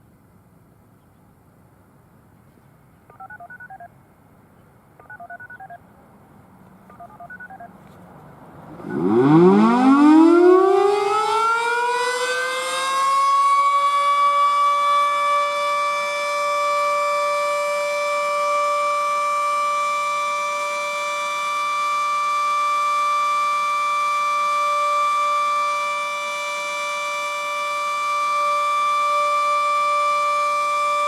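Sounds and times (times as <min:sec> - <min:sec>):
touch-tone beeps: 0:03.1 - 0:03.9, 0:05.0 - 0:05.8, 0:06.9 - 0:07.7
warning siren winding up: 0:08.7 - 0:31.0.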